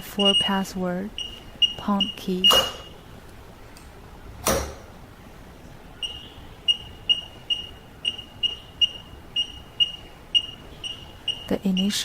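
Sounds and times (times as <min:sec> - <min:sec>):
keypad short high beeps: 0:01.2 - 0:02.9.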